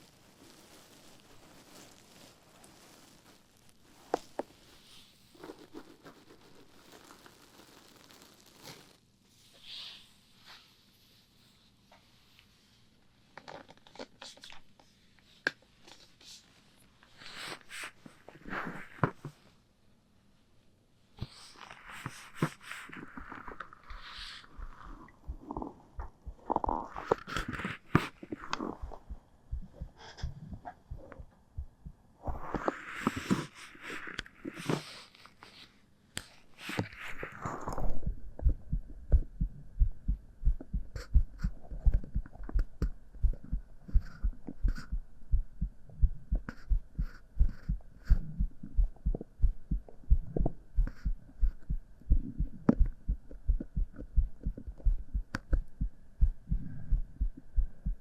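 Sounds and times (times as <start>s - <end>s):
rubbing on microphone: 0.0s - 12.6s, 17.1s - 19.5s, 21.2s - 58.0s
human heartbeat: 24.5s - 27.2s, 28.0s - 32.6s, 37.8s - 58.0s.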